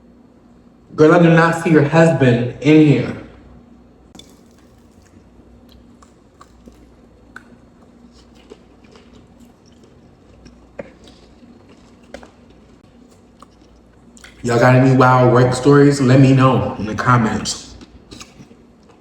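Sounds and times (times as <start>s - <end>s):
person chewing food: 4.1s - 14.4s, 17.7s - 19.0s.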